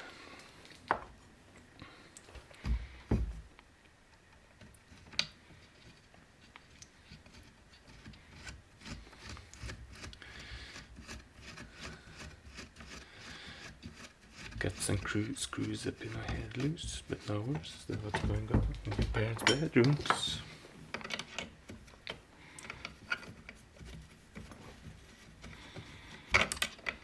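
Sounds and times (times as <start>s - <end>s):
screws turning by hand: 7.3s - 27.0s
light knocks and clicks: 16.0s - 22.2s.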